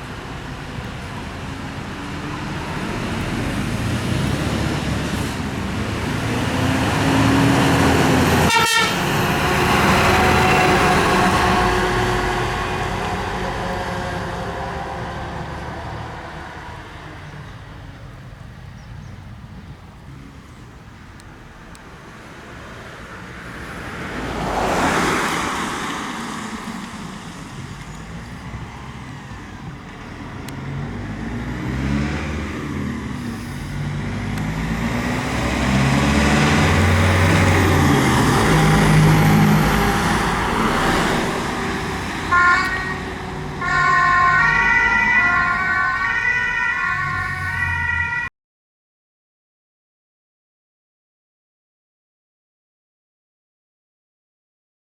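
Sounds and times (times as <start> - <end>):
fire engine diesel pulling away: 0.0 - 48.3
vehicle passing: 0.2 - 18.3, 21.4 - 48.3
two-tone emergency siren: 8.3 - 15.2, 38.0 - 48.3.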